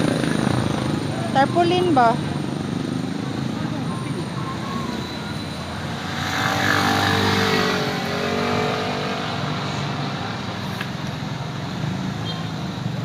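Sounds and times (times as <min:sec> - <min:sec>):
vehicle engine passing by: 0:00.0 - 0:10.2
steady traffic noise: 0:00.0 - 0:13.0.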